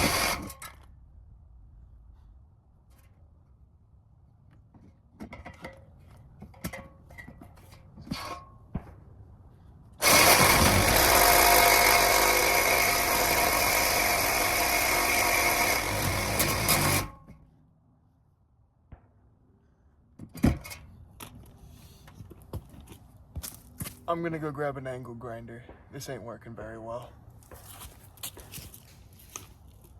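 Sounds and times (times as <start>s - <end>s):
reciprocating saw cutting metal: 0.0s - 0.6s, 10.0s - 17.3s.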